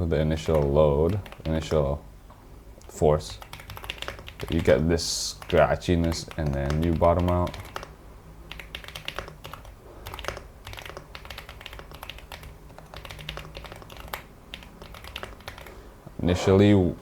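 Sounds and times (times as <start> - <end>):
mechanical keyboard clicking: 3.3 - 4.8, 5.4 - 7.9, 8.5 - 15.7.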